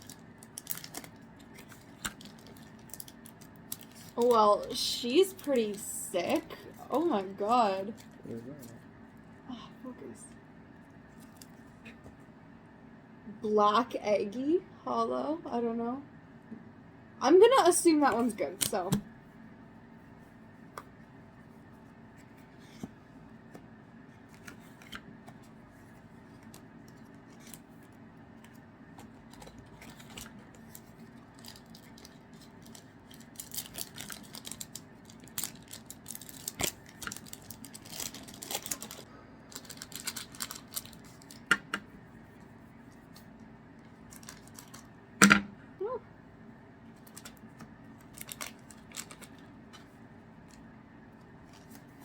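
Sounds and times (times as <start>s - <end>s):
cards and wrappers rustling: 0.0s - 8.8s, 24.2s - 41.6s, 43.9s - 44.9s, 46.9s - 49.9s.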